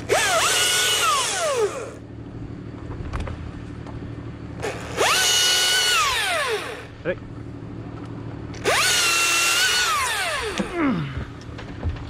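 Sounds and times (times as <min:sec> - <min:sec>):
electric chainsaw motor whine: 0:00.0 - 0:02.1, 0:04.6 - 0:07.0, 0:08.5 - 0:10.8
low engine hum: 0:00.0 - 0:12.0.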